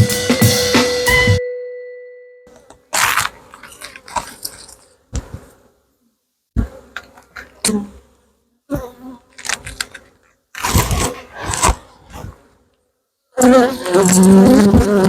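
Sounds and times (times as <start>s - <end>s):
honey bees buzzing: 13.4s - 15.0s.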